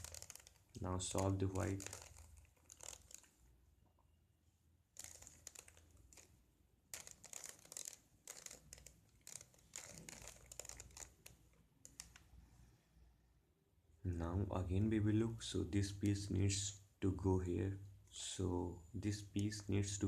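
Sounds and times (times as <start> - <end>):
plastic puzzle cube clicking: 0.0 - 3.3, 5.0 - 6.3, 6.9 - 12.2.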